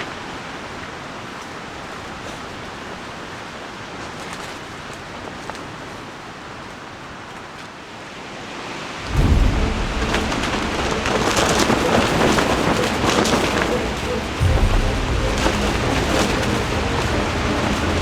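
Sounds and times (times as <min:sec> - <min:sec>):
storm wind buffeting microphone: 0:09.0 - 0:18.0.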